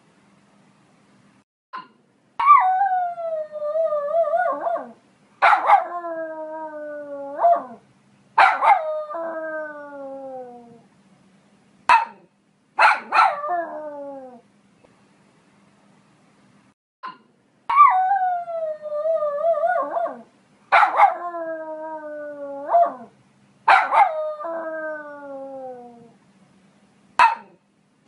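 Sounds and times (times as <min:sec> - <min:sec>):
dog barking and howling: 0:02.4 - 0:07.8, 0:08.4 - 0:10.8, 0:12.8 - 0:14.4, 0:17.7 - 0:23.1, 0:23.7 - 0:26.0.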